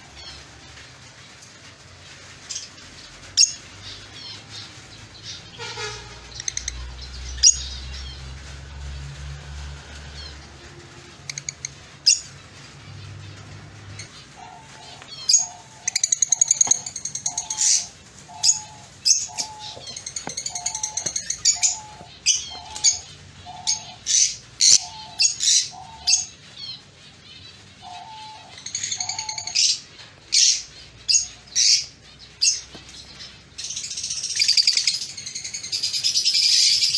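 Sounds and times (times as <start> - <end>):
lovebirds chirping: 13.0 - 36.9.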